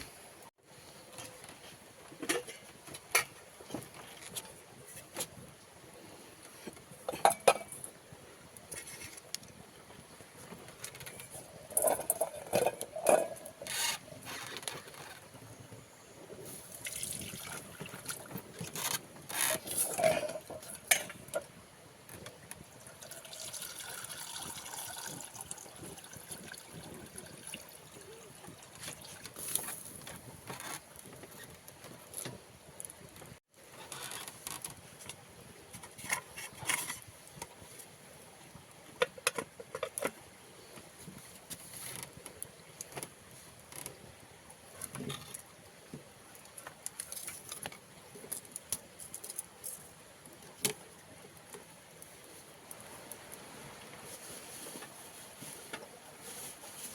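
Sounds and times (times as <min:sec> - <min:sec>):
water pouring and sloshing: 0:06.5 - 0:15.5, 0:16.4 - 0:56.9
pots and utensils clinking: 0:07.1 - 0:07.9, 0:11.2 - 0:13.6, 0:19.8 - 0:21.4.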